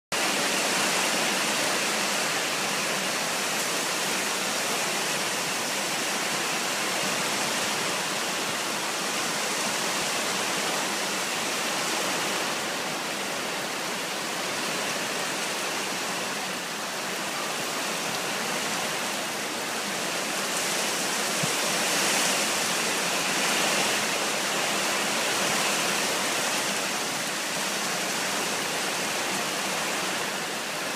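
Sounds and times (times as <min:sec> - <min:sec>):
torrential rain pouring: 0:00.1 - 0:30.9.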